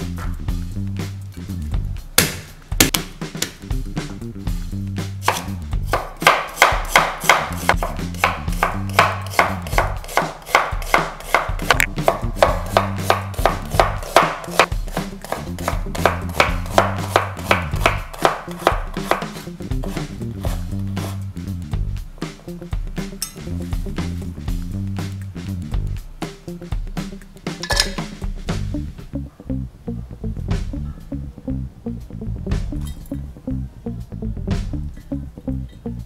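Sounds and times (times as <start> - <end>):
background music with bass line: 0.0 - 36.0
knife chopping on cutting board: 5.2 - 21.2.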